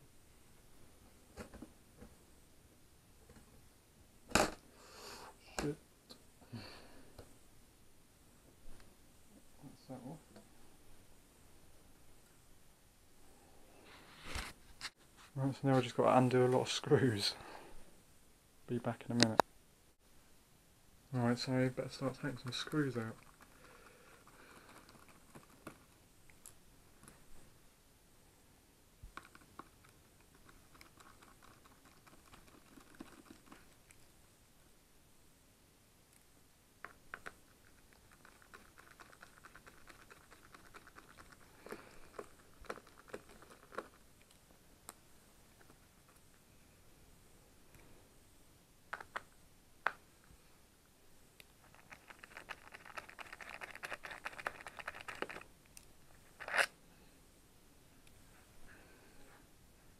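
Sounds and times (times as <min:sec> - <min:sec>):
screwdriver clicking and scratching: 0:51.6 - 0:55.4, 0:56.4 - 0:56.7.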